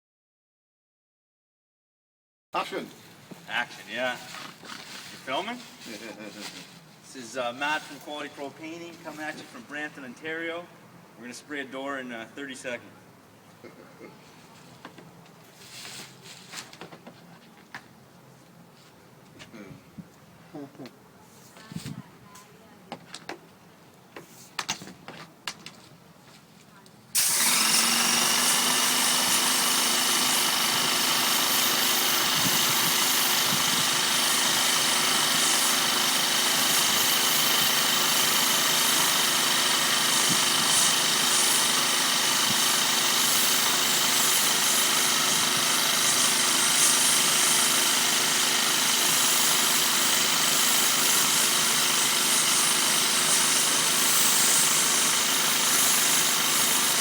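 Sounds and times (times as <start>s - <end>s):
paint sprayer hum: 27.2s - 57.0s.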